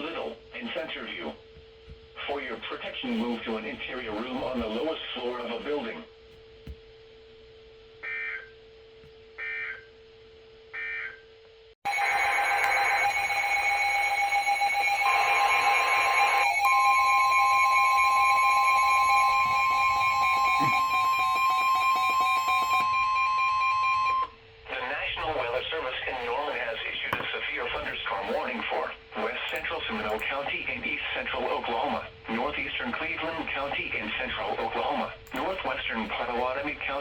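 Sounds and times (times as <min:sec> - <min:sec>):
digital header code bursts: 0:11.9 - 0:24.3
electronic alert tone: 0:11.9 - 0:24.3
steady tone: 0:11.9 - 0:24.4.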